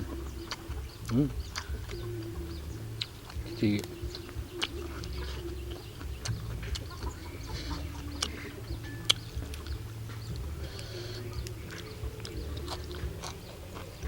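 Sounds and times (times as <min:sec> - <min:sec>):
chickens clucking: 0:00.0 - 0:14.0
steady low hum: 0:00.0 - 0:14.0.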